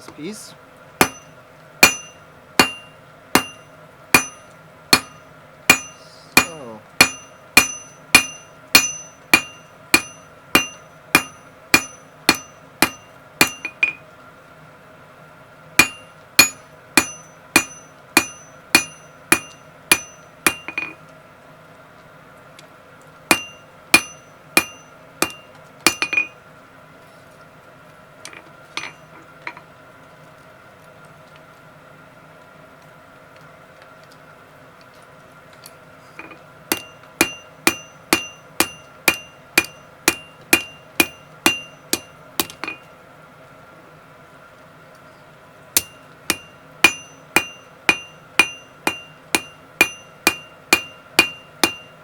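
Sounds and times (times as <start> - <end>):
hammer striking steel on anvil: 1.0 - 14.0, 15.8 - 21.0, 23.3 - 26.4, 28.3 - 29.6, 36.2 - 42.9, 45.8 - 52.0.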